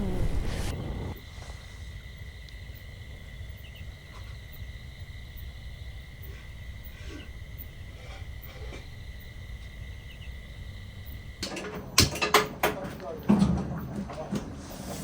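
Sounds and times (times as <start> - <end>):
fire crackles: 0.0 - 3.6
campfire rumble: 0.0 - 15.0.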